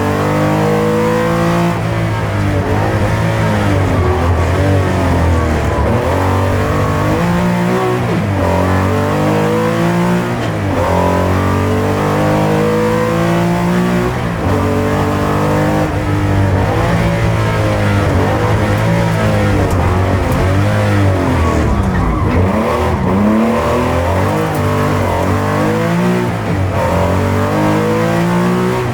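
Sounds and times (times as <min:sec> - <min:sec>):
car engine accelerating hard: 0:00.0 - 0:28.9.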